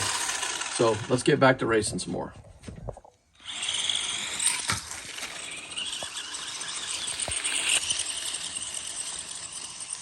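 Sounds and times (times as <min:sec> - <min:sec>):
rc truck motor whine: 0:00.0 - 0:01.5, 0:03.3 - 0:10.0.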